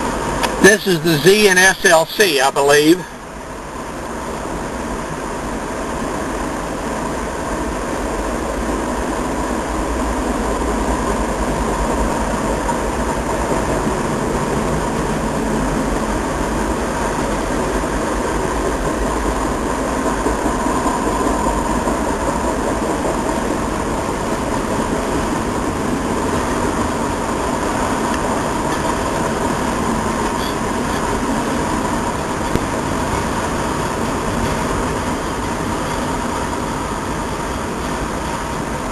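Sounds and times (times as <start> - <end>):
freight train rumble and rattle: 0.0 - 38.9
faint steady tone: 30.2 - 31.0.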